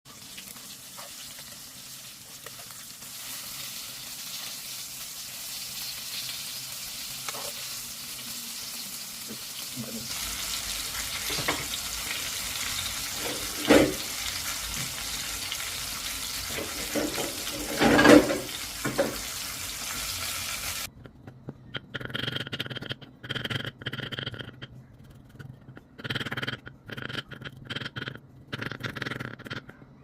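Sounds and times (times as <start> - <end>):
cutlets sizzling in frying: 0.1 - 20.9.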